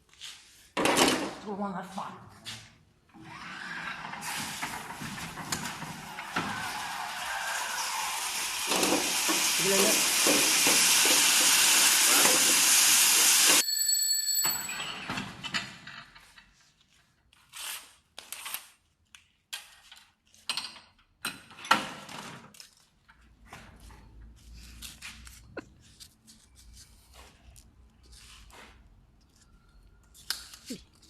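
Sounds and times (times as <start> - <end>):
machine hissing loudly: 6.2 - 13.6.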